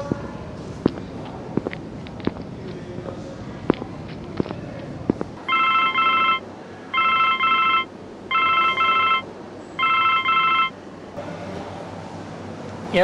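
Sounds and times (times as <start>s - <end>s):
telephone ringing: 5.4s - 10.8s.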